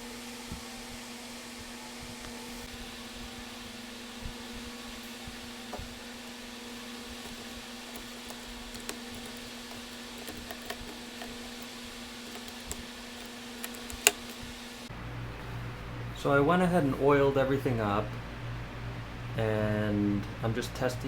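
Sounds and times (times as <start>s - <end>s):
steady low hum: 0.0s - 21.0s
small parts clicking and tapping: 7.2s - 14.5s.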